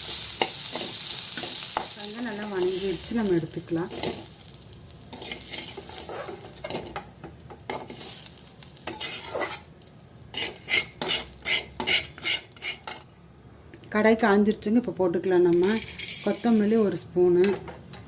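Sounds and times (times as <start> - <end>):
ghee sizzling: 0.0 - 17.4
metal spoon scraping pan: 5.1 - 6.9, 8.8 - 9.7, 10.3 - 13.1, 15.5 - 16.8.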